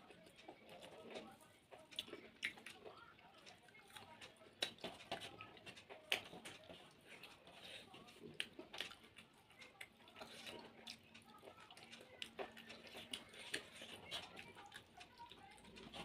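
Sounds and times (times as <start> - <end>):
person chewing: 0.0 - 16.0
lip smacks and mouth clicks: 1.9 - 2.8.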